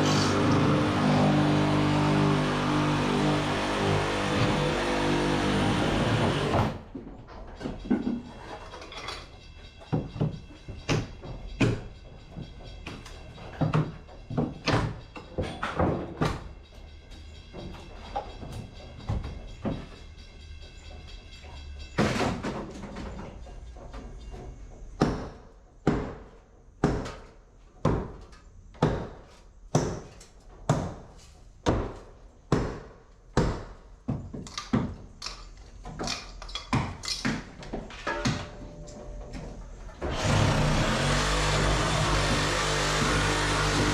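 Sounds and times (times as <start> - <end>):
sharp knocks and thuds: 25.0 - 35.1.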